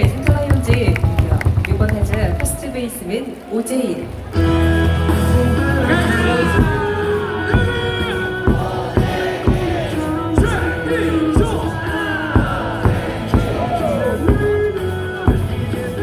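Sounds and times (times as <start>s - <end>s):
crowd singing along: 4.4s - 16.0s
heavy drum beat music: 4.4s - 16.0s.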